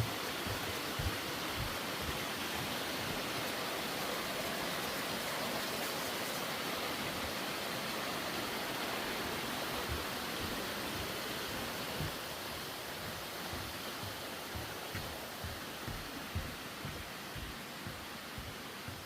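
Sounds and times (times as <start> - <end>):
soft low thuds: 0.0 - 3.2, 9.8 - 19.0
stream rushing: 0.0 - 19.0.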